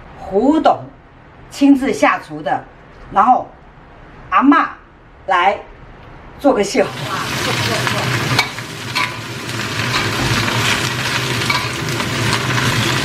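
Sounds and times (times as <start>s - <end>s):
vegetables sizzling in a pan: 6.8s - 13.0s
metal spatula scraping a pan: 7.6s - 13.0s.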